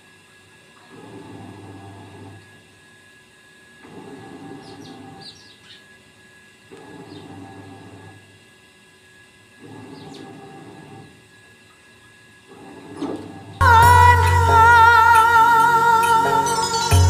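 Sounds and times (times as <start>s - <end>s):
small birds chirping: 4.6s - 5.9s.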